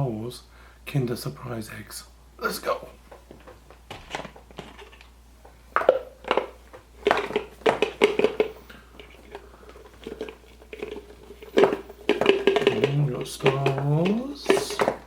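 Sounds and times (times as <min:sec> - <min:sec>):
foil wrapper crinkling: 0:03.1 - 0:15.0.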